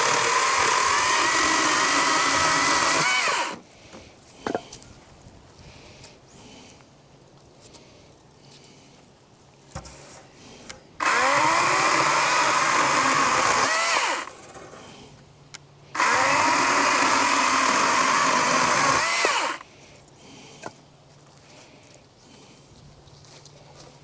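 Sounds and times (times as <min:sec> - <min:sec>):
electric chainsaw whining: 0:00.0 - 0:03.6, 0:11.0 - 0:14.8, 0:16.0 - 0:19.6.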